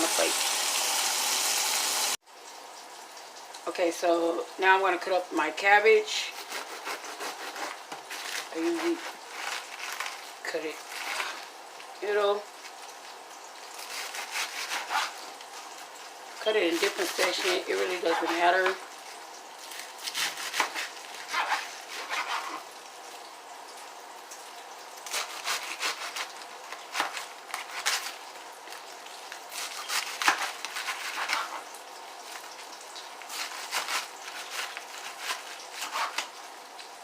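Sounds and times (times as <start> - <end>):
knife cutting cabbage: 6.2 - 11.5, 13.7 - 15.4, 16.4 - 22.7, 25.0 - 32.6, 33.2 - 36.4.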